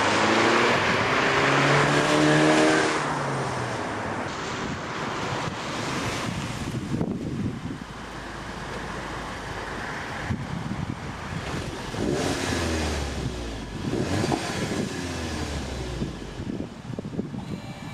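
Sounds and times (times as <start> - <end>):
car engine accelerating: 0.0 - 3.9, 11.3 - 16.6.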